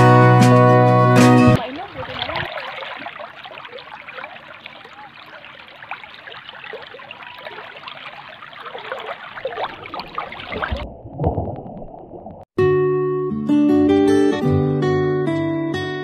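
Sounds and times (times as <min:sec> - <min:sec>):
stream water trickling: 0:01.6 - 0:12.5.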